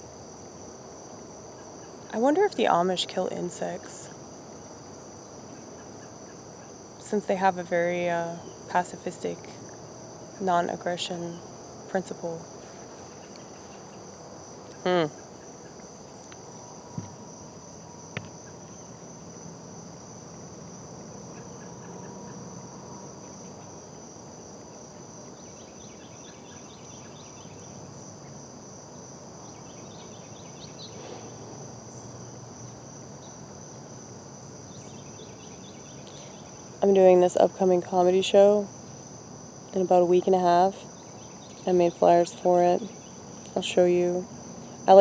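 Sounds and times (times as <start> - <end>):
crickets chirping: 0.0 - 45.0
faint knocks: 17.0 - 17.2.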